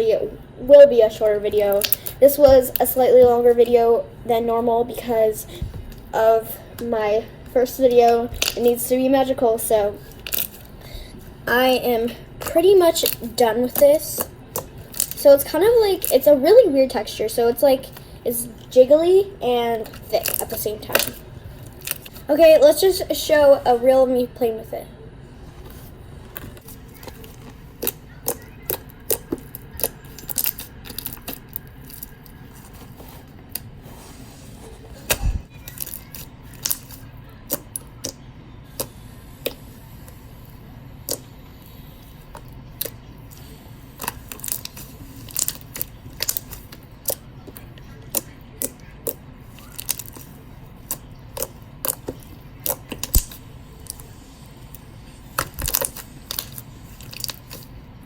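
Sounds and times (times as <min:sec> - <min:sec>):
slime squished by hand: 0:10.0 - 0:10.8, 0:12.4 - 0:15.4, 0:25.6 - 0:40.2, 0:41.0 - 0:57.8.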